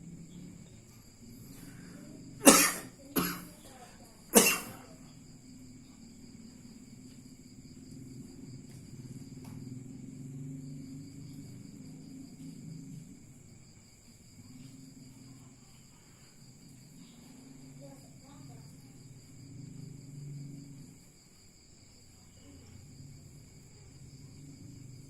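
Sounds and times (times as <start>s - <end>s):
man coughing: 2.4s - 3.5s, 4.4s - 4.8s.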